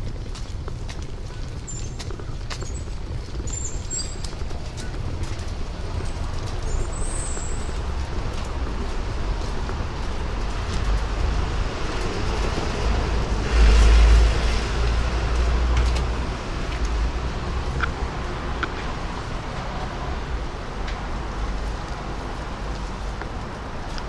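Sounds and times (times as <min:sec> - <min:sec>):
street traffic rumble: 0:00.0 - 0:24.0
vehicle passing close: 0:09.8 - 0:19.5.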